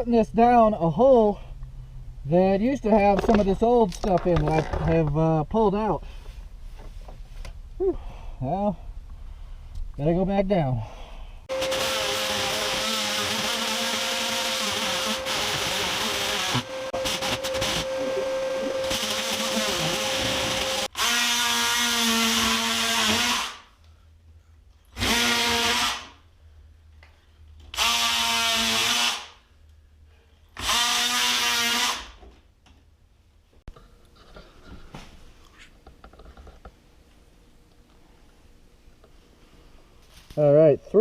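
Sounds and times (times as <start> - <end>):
power drill whining: 11.5 - 23.6, 30.6 - 32.2.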